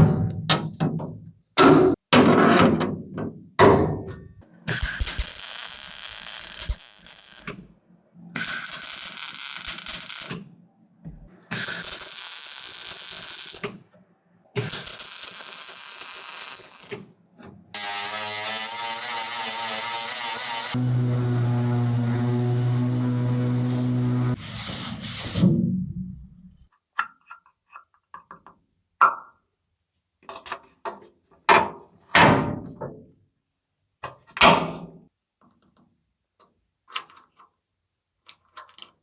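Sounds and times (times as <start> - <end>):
buzzing hum: 17.8 - 24.4
power tool running in bursts: 17.8 - 24.6.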